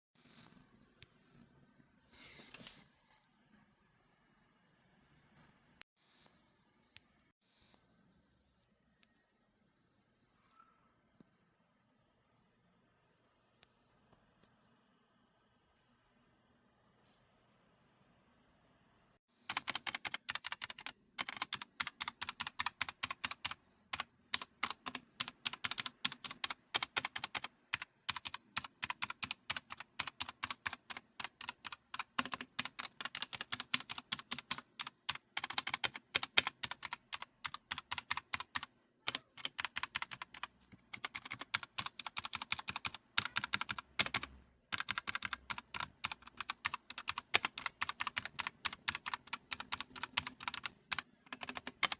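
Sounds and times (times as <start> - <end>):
mechanical keyboard typing: 19.5 - 51.9.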